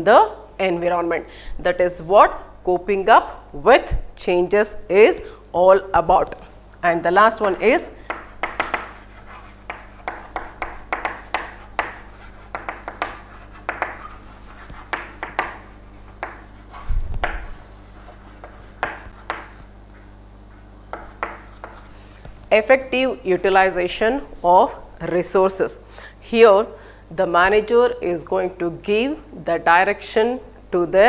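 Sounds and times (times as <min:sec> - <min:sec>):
pen scratching on paper: 0:08.1 - 0:19.6.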